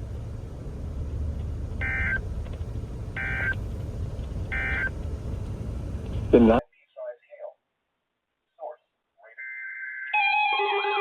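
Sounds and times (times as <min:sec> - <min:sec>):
steady low hum: 0:00.0 - 0:06.7.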